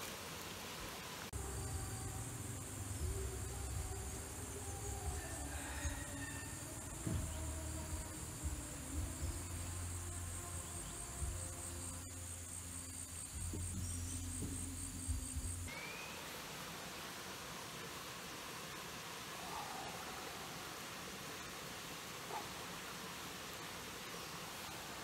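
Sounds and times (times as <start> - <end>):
insects trilling: 1.3 - 16.4.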